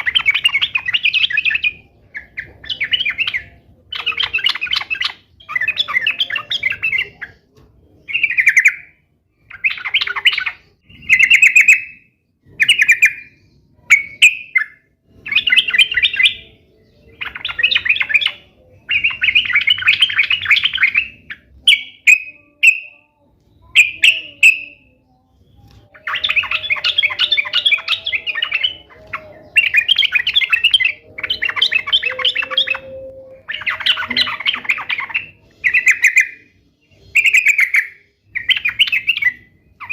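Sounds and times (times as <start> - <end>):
bulbul singing chattering notes: 12.7 - 25.0, 25.7 - 39.9.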